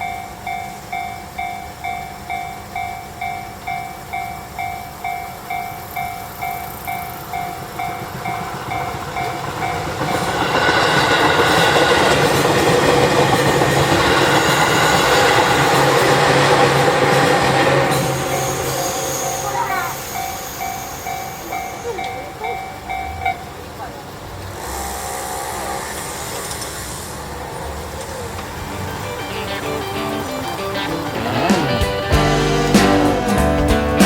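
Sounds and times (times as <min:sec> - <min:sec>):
train passing: 0:00.0 - 0:34.0
level crossing bell dinging: 0:17.9 - 0:23.6.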